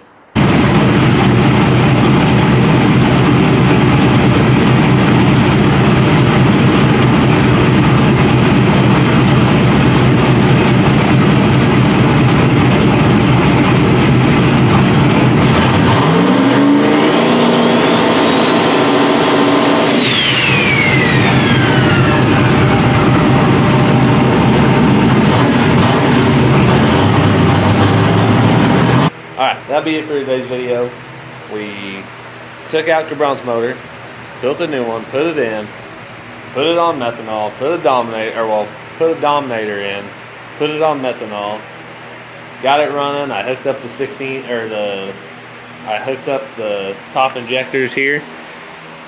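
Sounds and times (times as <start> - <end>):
engine revving: 0.4 - 29.1
turbo whistle: 16.5 - 24.4.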